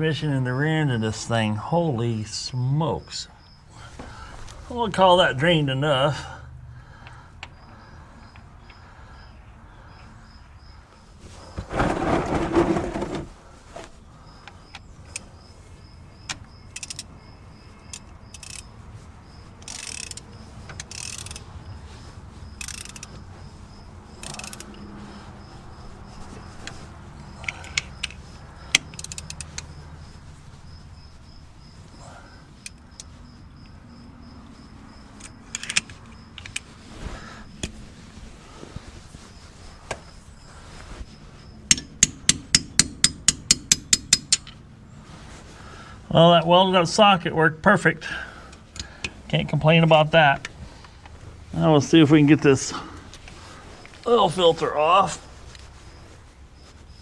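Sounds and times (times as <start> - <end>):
loud rattling: 11.6 - 13.9.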